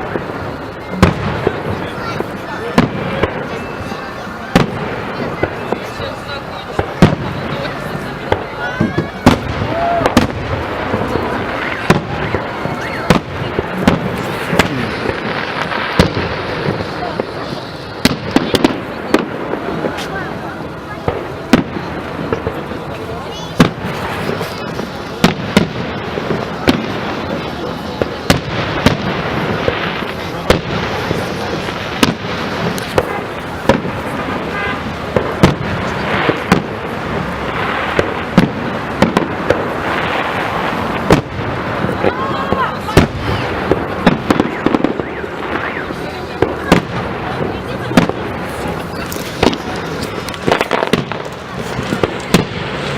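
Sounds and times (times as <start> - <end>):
fireworks crackle and hiss: 0.0 - 52.9
steady background rush: 0.0 - 52.9
firework shells bursting: 47.9 - 52.9.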